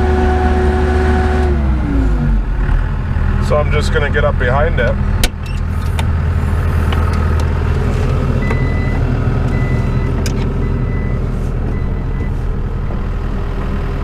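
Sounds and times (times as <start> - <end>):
skid steer engine running: 0.0 - 3.6, 4.9 - 14.0
backup alarm beeping: 8.3 - 13.2.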